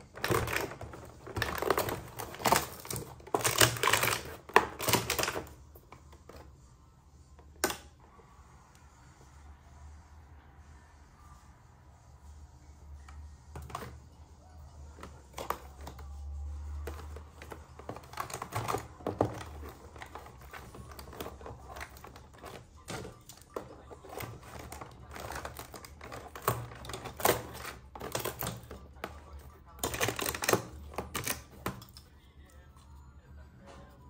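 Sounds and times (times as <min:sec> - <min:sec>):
packaging crinkling: 0:00.0 - 0:05.6, 0:16.8 - 0:31.9
plastic toys clicking: 0:00.0 - 0:06.5, 0:15.0 - 0:32.1.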